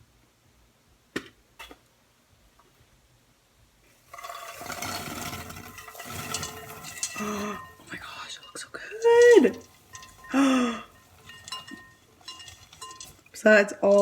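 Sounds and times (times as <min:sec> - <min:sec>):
popcorn kernels popping: 0:03.9 - 0:14.0
popcorn rattling into a bowl: 0:03.9 - 0:14.0.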